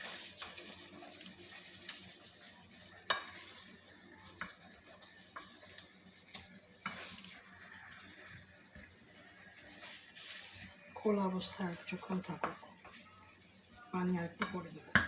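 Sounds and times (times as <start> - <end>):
curry sizzling in oil: 0.0 - 15.0.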